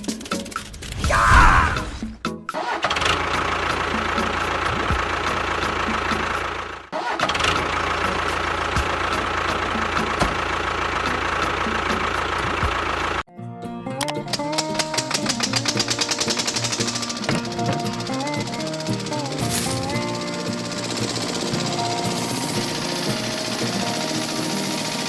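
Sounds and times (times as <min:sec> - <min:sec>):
motor running: 0:14.3 - 0:25.0.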